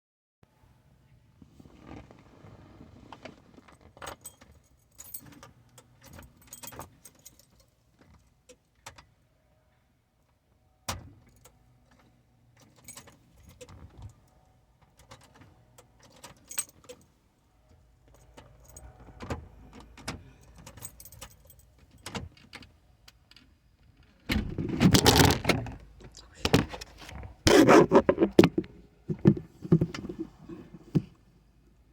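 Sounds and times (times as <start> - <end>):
keys jangling: 4.0 - 7.7, 16.0 - 17.0, 20.4 - 22.2.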